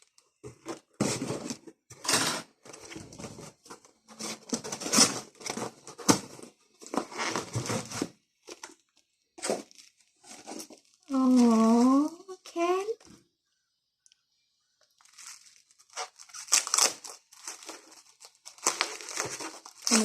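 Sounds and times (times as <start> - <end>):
packaging tearing and crinkling: 4.2 - 8.7, 15.0 - 20.0
cardboard box being opened: 15.1 - 20.0.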